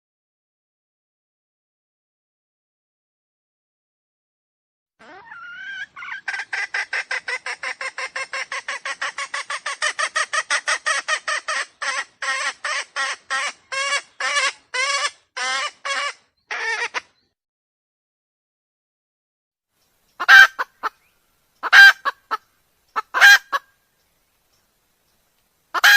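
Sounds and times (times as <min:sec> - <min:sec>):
wild chicken squawking: 0:05.0 - 0:17.2, 0:20.2 - 0:23.7.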